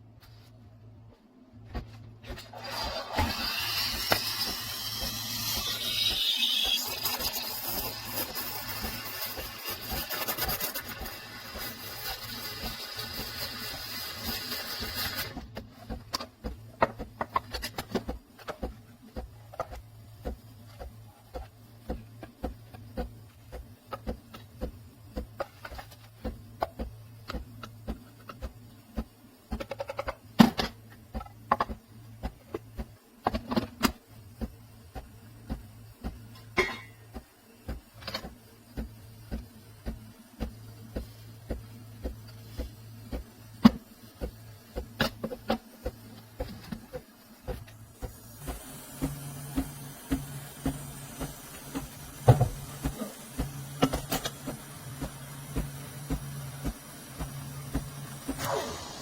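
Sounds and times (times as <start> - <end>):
espresso machine buzzing: 2.6 - 15.3, 48.0 - 59.0.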